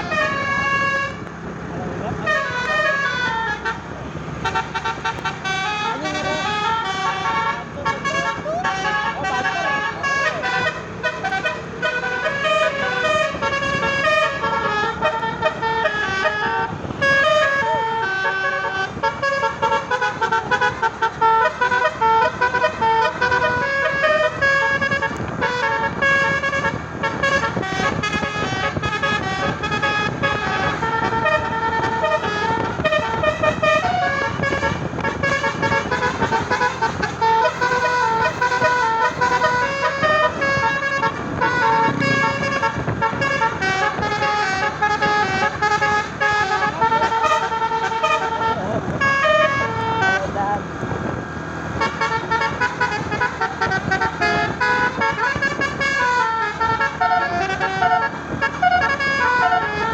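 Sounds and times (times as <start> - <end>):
musical air horn melody: 0.0 - 1.2, 2.2 - 50.6, 51.7 - 59.9
bus engine: 0.0 - 59.9
road noise: 0.0 - 59.9.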